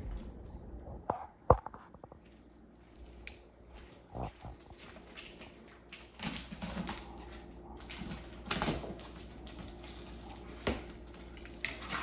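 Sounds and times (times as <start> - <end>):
cardboard and packaging rustling: 4.2 - 12.0.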